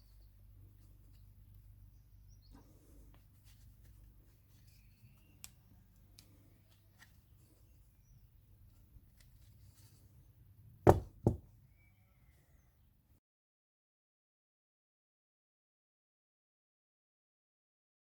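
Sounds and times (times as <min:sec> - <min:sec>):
loud short thumps: 0:10.9 - 0:11.5.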